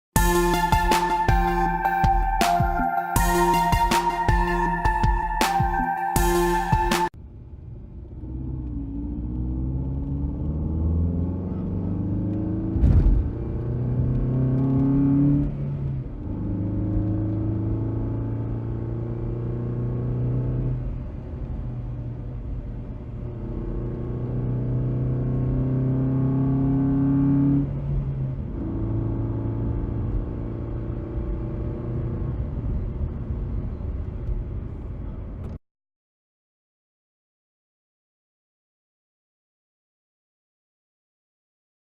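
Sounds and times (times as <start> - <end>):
muffled car engine accelerating: 7.2 - 35.6.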